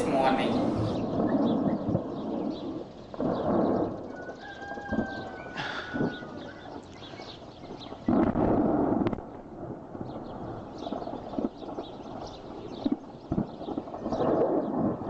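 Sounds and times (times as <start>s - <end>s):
explosion blast: 0.0s - 6.8s, 8.0s - 10.4s
birds chirping faintly: 0.0s - 8.3s.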